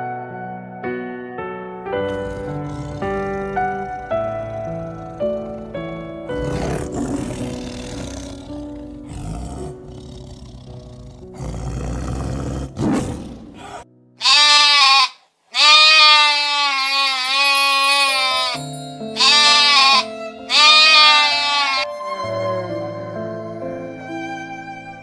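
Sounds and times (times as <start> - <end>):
background music: 0.0 - 14.7, 15.6 - 25.0
animal bleating: 2.0 - 11.5, 13.6 - 18.6, 19.2 - 21.9
rough noisy animal calls: 2.0 - 12.8, 13.5 - 18.6, 19.2 - 21.9.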